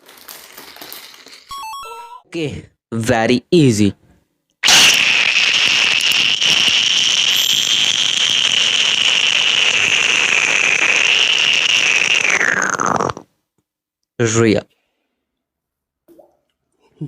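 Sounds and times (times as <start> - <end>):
crackling hiss with high whistle: 4.6 - 13.2.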